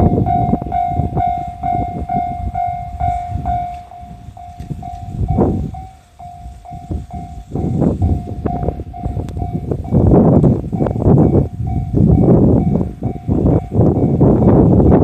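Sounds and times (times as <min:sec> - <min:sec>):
level crossing bell dinging: 0:00.0 - 0:09.7
train wheels clattering on rails: 0:00.0 - 0:15.0.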